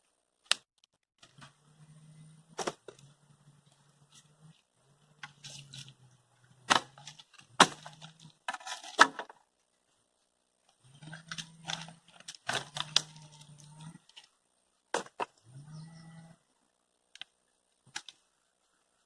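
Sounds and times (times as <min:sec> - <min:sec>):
low hum: 0:01.2 - 0:08.5.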